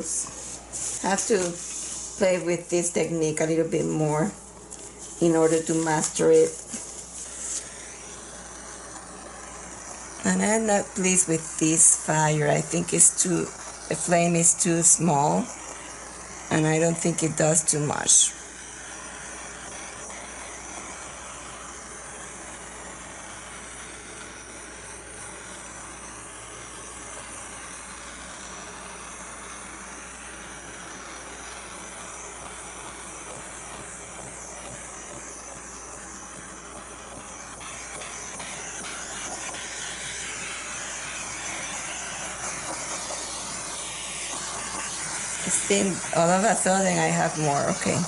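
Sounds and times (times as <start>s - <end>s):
torch flame hissing: 0.0s - 48.0s.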